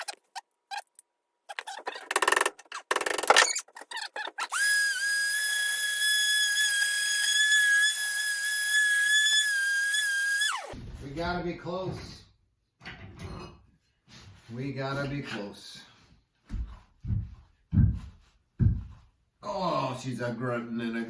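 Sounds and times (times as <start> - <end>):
power tool motor whining: 4.4 - 10.7.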